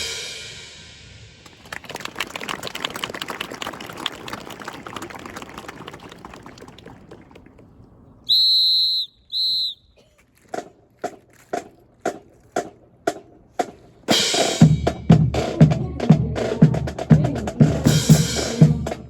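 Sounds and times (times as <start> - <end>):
applause: 1.4 - 7.7
whistle blasts: 8.2 - 10.0.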